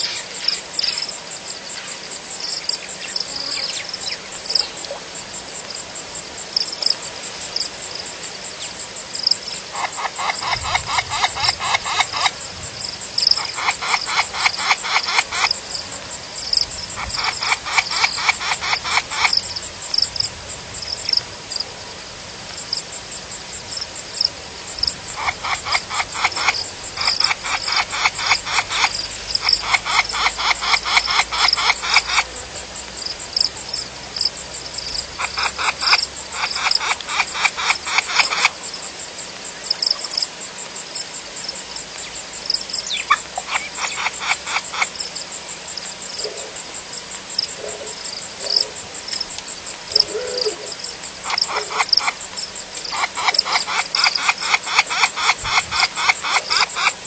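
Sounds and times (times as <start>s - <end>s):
frogs calling with clicking pulses: 0.0s - 57.0s.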